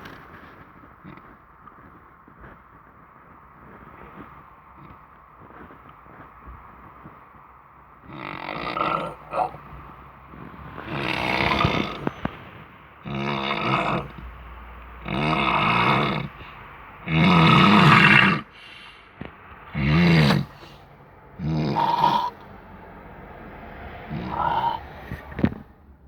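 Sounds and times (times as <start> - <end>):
loud snoring: 8.0 - 14.4, 15.0 - 18.8, 19.7 - 20.8, 21.4 - 22.4, 24.0 - 25.6.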